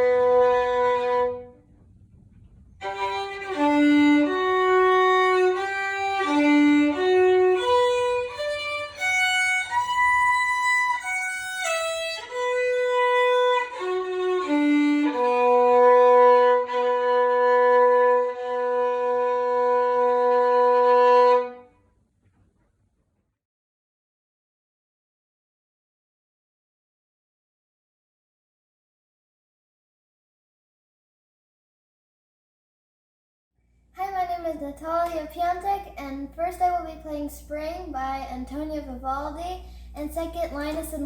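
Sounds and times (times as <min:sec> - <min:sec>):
solo violin melody: 0:00.0 - 0:01.6, 0:02.8 - 0:21.7.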